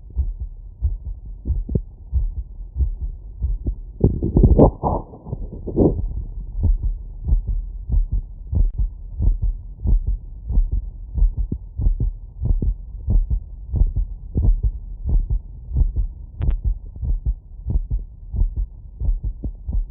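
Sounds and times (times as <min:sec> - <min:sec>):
heartbeat through stethoscope: 0:00.0 - 0:19.9
rubbing noise: 0:04.0 - 0:06.3.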